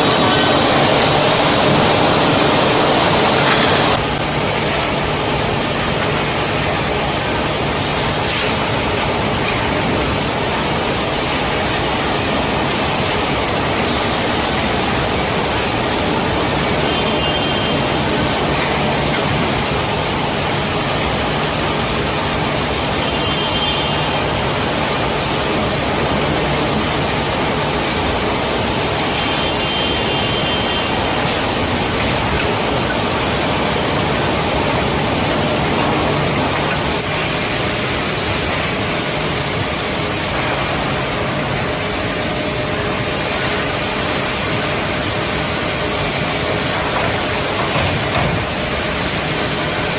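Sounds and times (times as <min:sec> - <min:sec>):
woodworking machinery running: 0:00.0 - 0:49.9.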